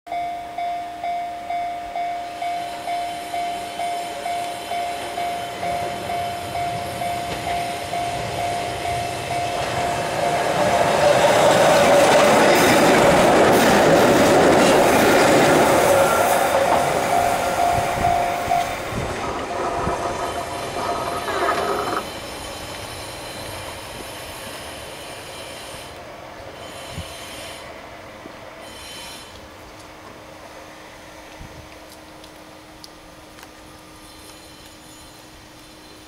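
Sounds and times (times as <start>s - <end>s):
level-crossing warning bell: 0.1s - 13.1s, 15.4s - 25.9s, 34.0s - 35.9s
train passing: 0.1s - 36.0s.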